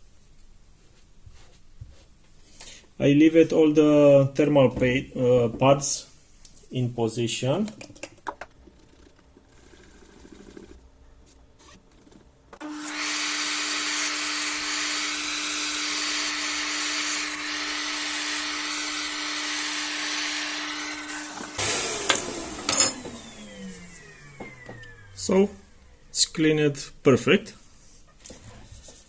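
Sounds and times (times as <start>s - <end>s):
high-speed electric motor humming: 11.6s - 26.0s.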